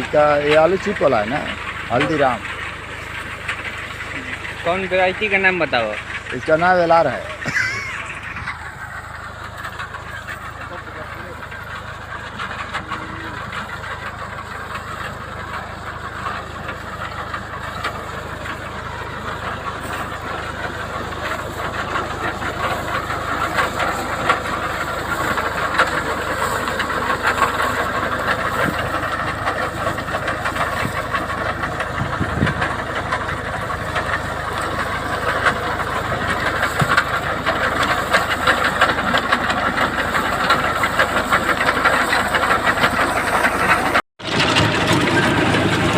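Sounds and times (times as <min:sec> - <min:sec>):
machinery rattling: 0:00.0 - 0:45.9
tractor engine under load: 0:00.0 - 0:45.9.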